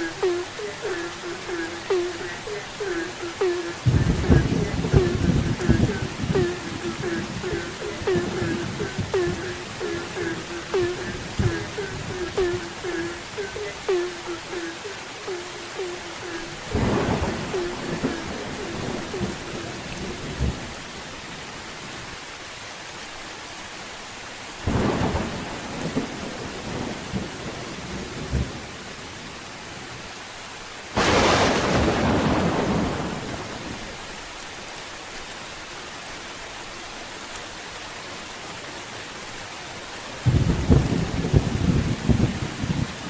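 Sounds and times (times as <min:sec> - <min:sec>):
thunder rumbling: 0:00.0 - 0:14.7, 0:15.3 - 0:20.7, 0:31.0 - 0:33.9, 0:40.3 - 0:43.0
steady rain hissing: 0:00.0 - 0:43.0
loud thunder clap: 0:31.0 - 0:33.8.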